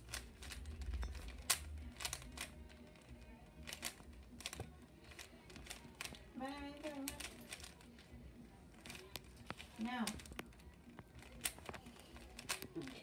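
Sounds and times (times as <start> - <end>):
puzzle cube layers clicking: 0.0 - 2.8, 3.6 - 6.2
faint background music: 0.0 - 13.0.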